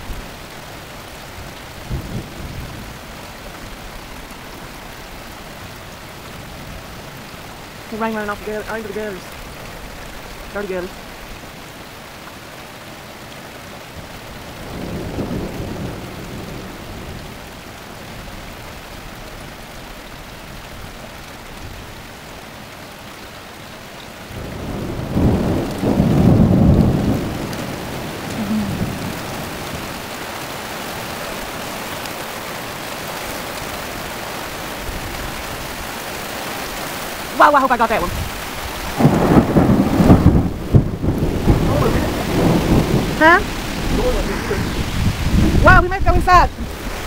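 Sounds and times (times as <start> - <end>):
rain running into gutters: 0.0 - 47.0
thunder rumbling: 1.4 - 3.2, 14.3 - 18.3, 24.3 - 30.1, 37.4 - 47.0.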